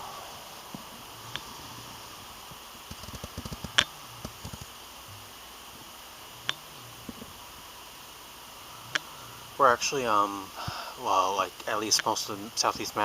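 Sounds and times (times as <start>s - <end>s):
steady hiss: 0.0s - 13.0s
sharp clicks and taps: 2.9s - 4.7s.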